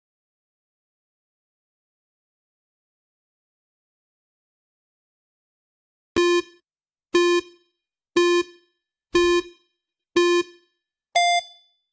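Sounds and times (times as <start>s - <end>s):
short electronic beeps: 6.2s - 6.6s, 8.2s - 8.6s, 9.2s - 9.6s, 10.2s - 10.6s, 11.2s - 11.7s.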